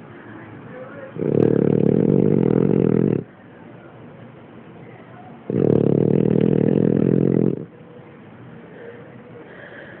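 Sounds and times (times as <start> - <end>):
dog snoring: 1.1 - 3.3, 5.4 - 7.7
dog breathing: 1.2 - 3.3, 5.5 - 7.7.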